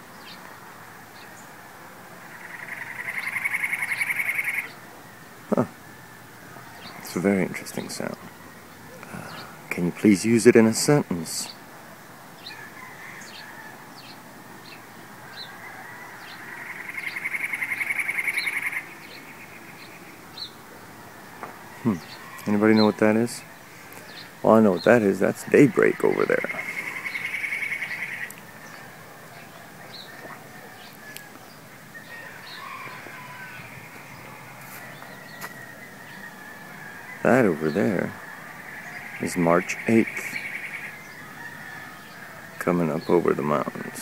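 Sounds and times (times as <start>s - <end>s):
songbird chirps and rattling trill: 2.2s - 5.7s, 12.3s - 43.9s.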